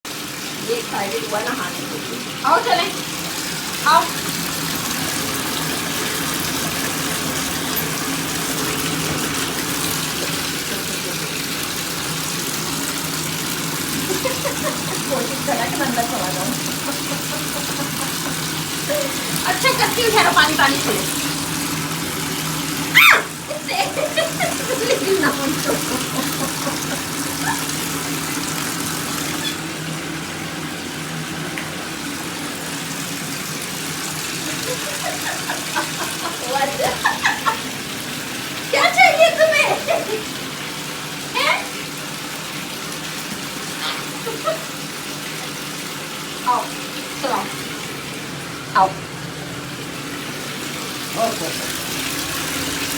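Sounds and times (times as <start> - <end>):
tap water running: 0.0 - 52.9.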